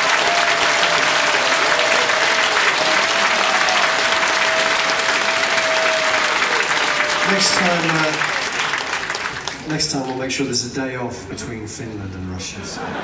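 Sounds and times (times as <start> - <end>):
audience applauding: 0.0 - 10.6.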